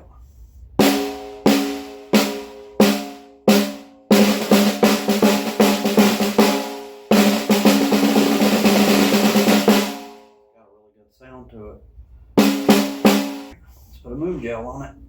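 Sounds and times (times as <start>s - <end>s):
snare drum hits: 0.8s - 10.2s, 12.4s - 13.5s
snare drum rolling strokes: 0.8s - 10.3s, 12.4s - 13.6s.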